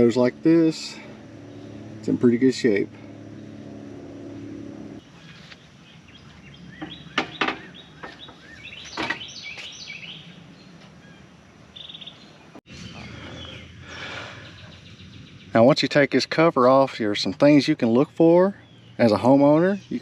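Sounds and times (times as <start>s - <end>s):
steady low hum: 0.0s - 8.8s
small birds chirping: 0.0s - 20.0s.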